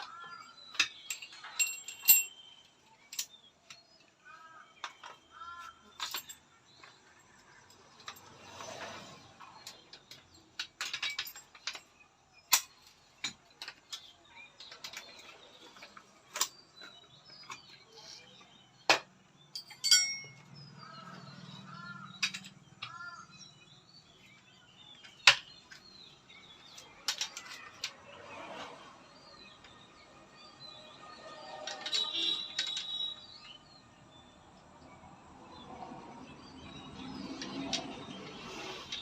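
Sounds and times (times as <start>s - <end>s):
knocks and clicks of hand tools: 0.0s - 2.3s, 4.8s - 17.9s, 18.8s - 20.6s, 21.6s - 23.3s, 24.9s - 26.0s
birds chirping: 0.0s - 39.0s.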